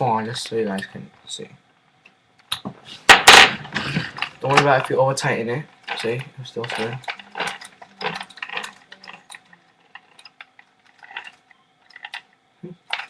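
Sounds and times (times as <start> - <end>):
wrench clicking and rasping: 5.9 - 12.2.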